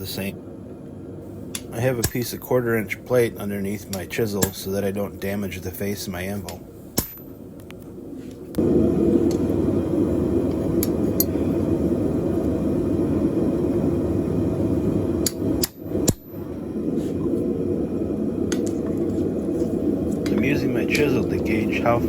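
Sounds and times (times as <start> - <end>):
hammer striking metal chisel: 7.0 - 7.2
steady low roar: 8.6 - 22.0.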